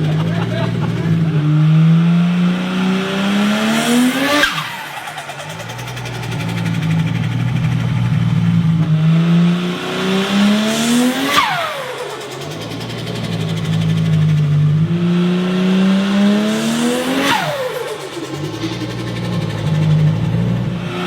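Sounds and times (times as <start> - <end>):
car engine revving: 0.0 - 21.0
turbo whistle flutter: 3.5 - 8.3, 16.5 - 21.0.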